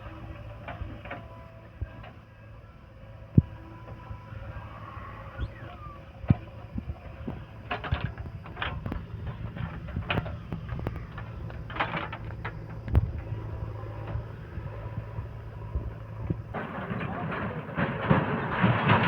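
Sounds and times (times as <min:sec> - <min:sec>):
diesel engine running: 0:00.0 - 0:19.0
metal clanks and rattles: 0:06.3 - 0:19.0.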